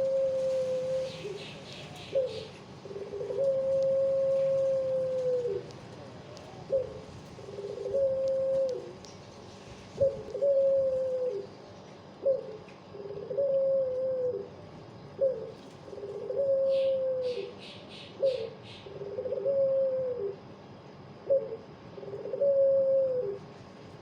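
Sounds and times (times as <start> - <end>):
dove cooing: 0.0 - 9.1, 10.0 - 11.5, 12.2 - 20.4, 21.2 - 23.5
small bird chirping: 1.0 - 2.6, 16.6 - 18.9.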